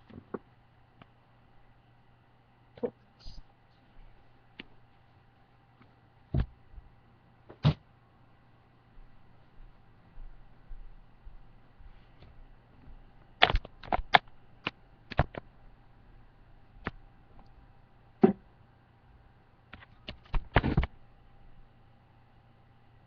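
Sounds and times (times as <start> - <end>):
faint steady hum: 0.0 - 23.0
sharp clicks and knocks: 13.4 - 15.4.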